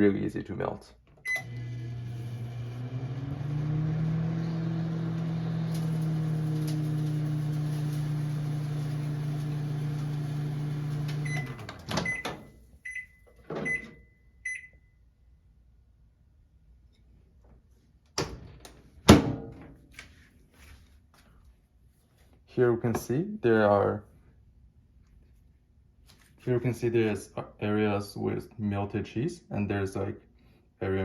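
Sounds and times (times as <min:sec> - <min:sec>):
microwave oven hum: 0:01.2 - 0:13.9
microwave click: 0:01.3 - 0:12.4.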